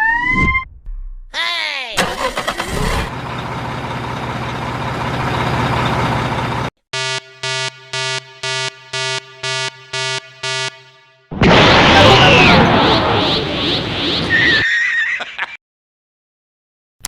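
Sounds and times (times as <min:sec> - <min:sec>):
vehicle engine running: 0:02.5 - 0:10.7
short horn-like beeps: 0:06.9 - 0:11.3.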